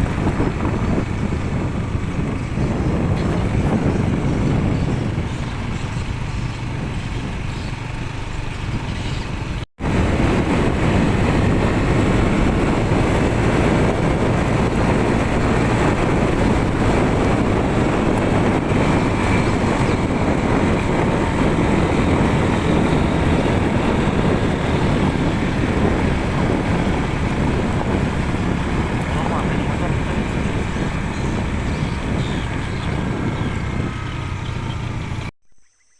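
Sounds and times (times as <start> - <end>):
small engine running: 0.0 - 35.3
wind noise on microphone: 0.0 - 35.3.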